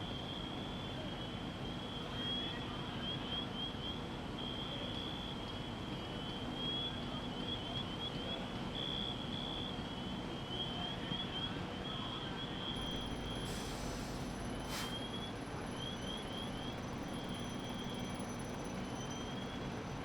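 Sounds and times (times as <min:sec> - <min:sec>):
low engine rumble: 0:12.8 - 0:20.0.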